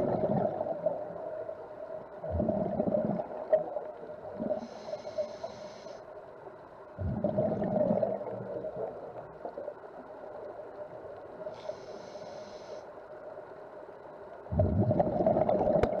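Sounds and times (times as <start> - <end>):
exhaled bubbles rumbling: 0.0 - 4.6, 7.0 - 9.8, 14.5 - 16.0
steady underwater hum: 0.0 - 16.0
regulator inhaling hiss: 4.5 - 6.2, 11.4 - 13.2.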